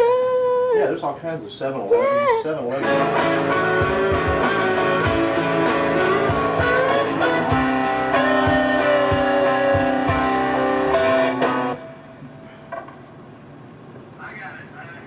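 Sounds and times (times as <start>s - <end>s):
blues-rock music: 2.7s - 11.8s
electric guitar lead: 2.8s - 12.0s.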